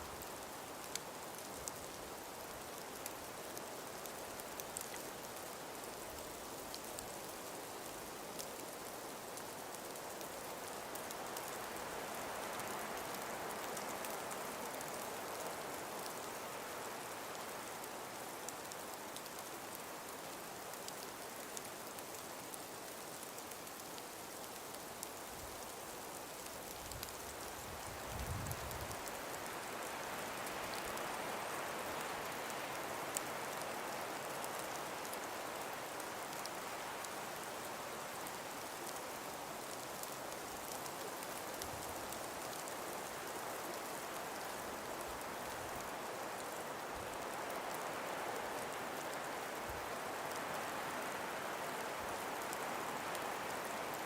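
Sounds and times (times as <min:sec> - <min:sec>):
breeze hissing through trees: 0:00.0 - 0:54.0
faint sharp ticks: 0:26.7 - 0:27.2.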